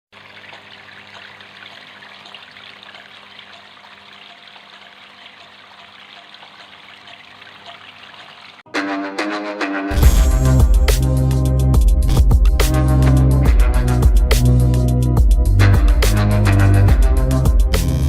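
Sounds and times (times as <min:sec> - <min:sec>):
water trickling: 0:00.1 - 0:08.7.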